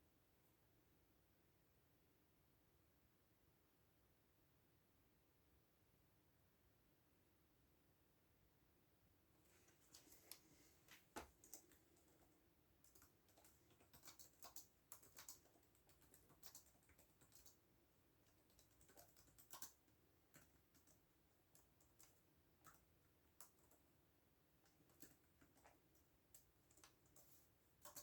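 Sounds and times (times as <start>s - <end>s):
typing on a keyboard: 9.9s - 24.0s, 24.6s - 28.0s.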